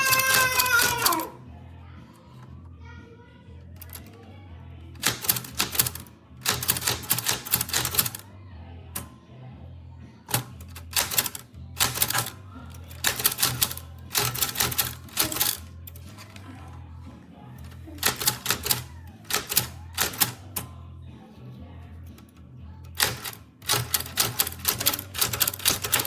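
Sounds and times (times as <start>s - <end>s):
typewriter keystrokes: 0.0s - 1.3s, 3.8s - 4.2s, 5.0s - 8.2s, 10.3s - 12.3s, 12.9s - 16.3s, 18.0s - 20.6s, 22.9s - 26.0s
background music: 0.0s - 26.0s.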